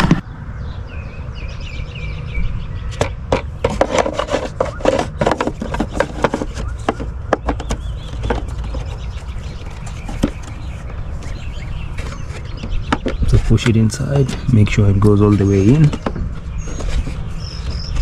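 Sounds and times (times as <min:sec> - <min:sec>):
air filter scraping into plastic box: 0:03.6 - 0:18.0.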